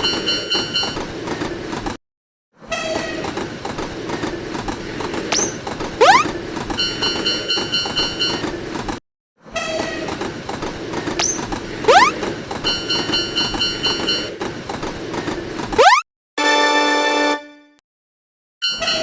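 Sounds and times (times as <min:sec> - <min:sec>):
train rumble and wheel clatter: 0:00.0 - 0:02.0, 0:02.8 - 0:09.0, 0:09.7 - 0:15.8
horn-like chord: 0:16.4 - 0:17.8.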